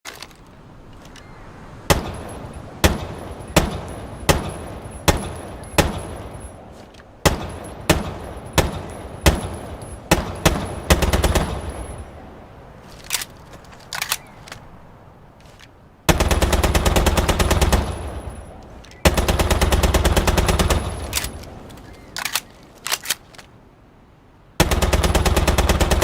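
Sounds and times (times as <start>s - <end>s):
submachine gun shots echoing: 1.9s - 12.2s, 16.1s - 21.6s, 24.6s - 26.0s.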